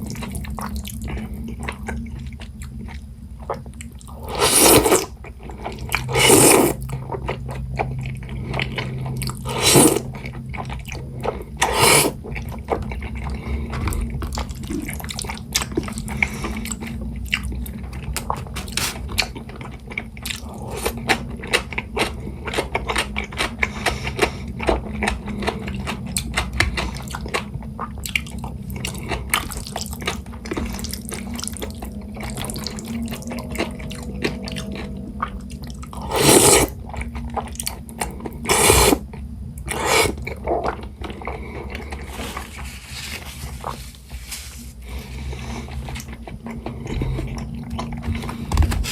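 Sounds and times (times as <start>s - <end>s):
wet chewing and mouth clicks: 0.0s - 42.5s
slurping noodles: 4.2s - 5.1s, 5.8s - 6.9s, 9.3s - 10.2s, 11.5s - 12.3s, 18.2s - 19.1s, 20.4s - 21.0s, 35.6s - 36.8s, 38.3s - 39.0s, 39.6s - 40.6s.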